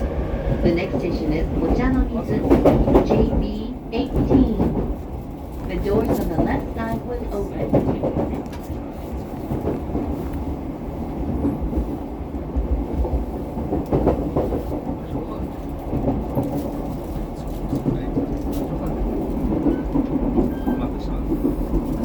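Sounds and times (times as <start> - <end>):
train carriage rumbling on rails: 0.0 - 22.0
train clicks: 0.0 - 22.0.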